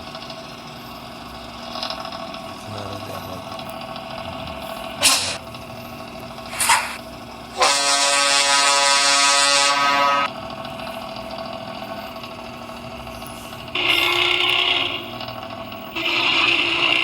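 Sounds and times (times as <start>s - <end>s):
truck air horn blast: 5.0s - 5.4s, 7.6s - 10.3s, 13.8s - 15.2s, 16.0s - 17.0s.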